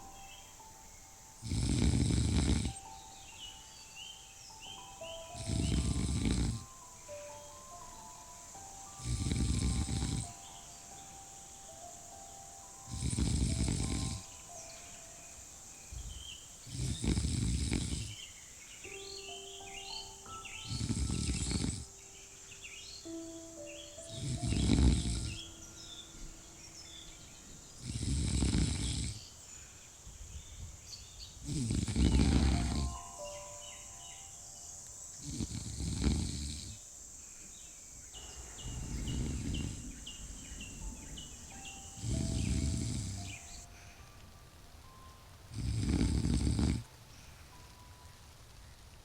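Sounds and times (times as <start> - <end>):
person snoring: 1.4 - 2.9, 5.3 - 6.7, 9.0 - 10.4, 12.9 - 14.3, 16.6 - 18.2, 20.7 - 22.0, 24.1 - 25.5, 27.8 - 29.3, 31.4 - 33.0, 35.2 - 36.8, 38.7 - 40.0, 41.5 - 43.6, 45.5 - 46.9.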